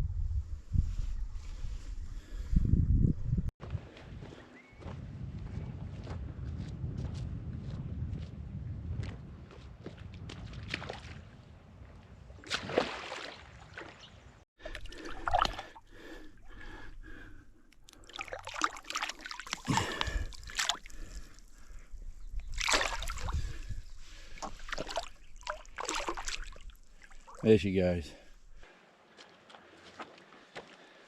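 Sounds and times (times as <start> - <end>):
water splashing and sloshing: 9.0 - 31.0.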